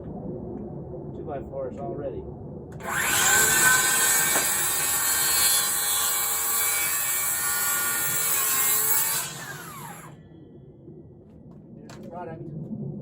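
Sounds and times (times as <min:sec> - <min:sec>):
power saw cutting wood: 0:02.8 - 0:10.1.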